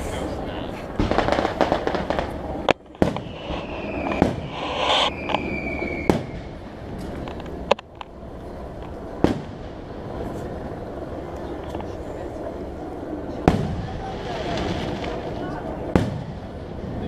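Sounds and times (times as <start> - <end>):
firework crackle: 0.0 - 17.0
firework bangs: 0.9 - 7.7, 9.2 - 10.6, 13.4 - 17.0
thin falling whistle: 3.2 - 6.5.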